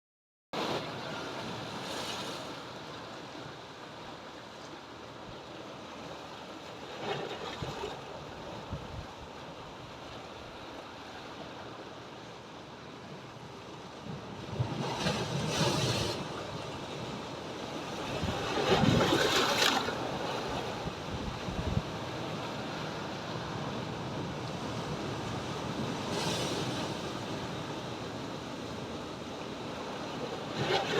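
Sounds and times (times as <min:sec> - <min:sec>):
sea waves breaking on rocks: 0:13.4 - 0:30.9.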